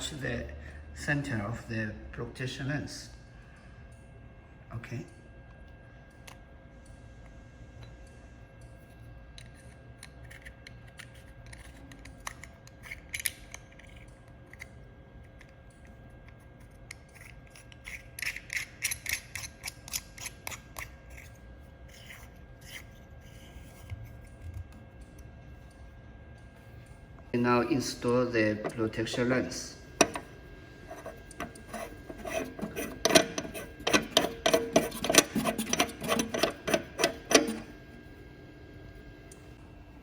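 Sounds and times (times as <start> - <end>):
faint steady hum: 0.0 - 40.0
small parts clicking and scraping: 9.4 - 25.2, 30.0 - 30.3, 30.9 - 37.7.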